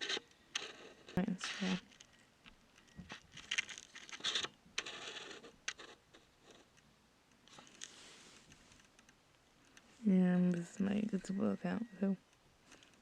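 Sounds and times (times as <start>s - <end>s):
fingers scratching and tapping phone: 0.0s - 6.9s.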